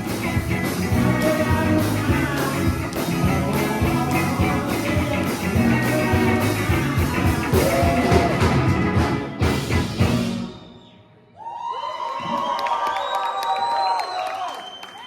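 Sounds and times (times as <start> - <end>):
live rock music: 0.0 - 10.7.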